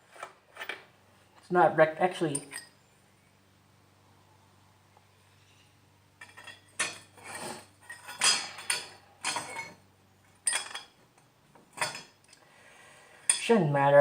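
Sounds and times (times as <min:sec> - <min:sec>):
metal tools clinking and rattling: 0:02.3 - 0:02.8, 0:06.2 - 0:12.4.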